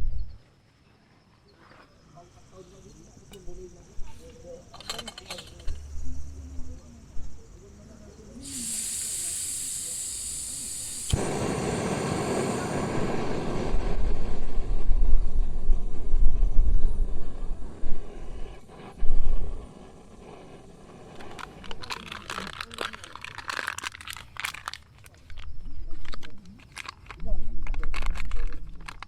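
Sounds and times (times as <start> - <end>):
steady high hiss: 2.1 - 22.9
storm wind buffeting microphone: 11.2 - 21.7.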